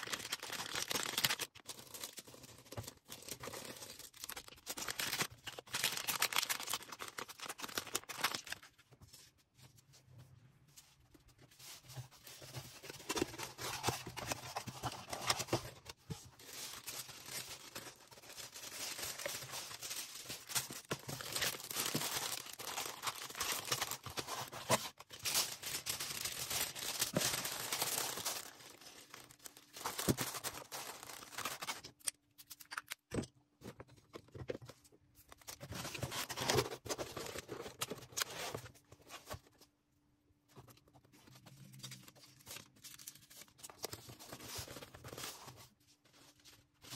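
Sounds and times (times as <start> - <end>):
plastic packaging crinkling: 0.0 - 8.8, 12.8 - 32.0.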